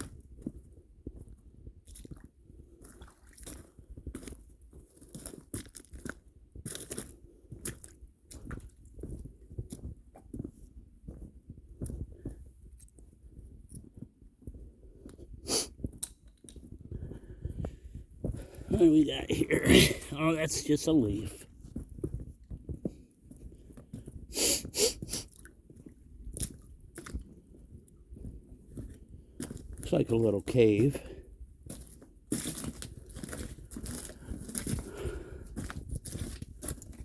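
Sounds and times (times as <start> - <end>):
footsteps crunching on gravel: 31.7 - 37.0.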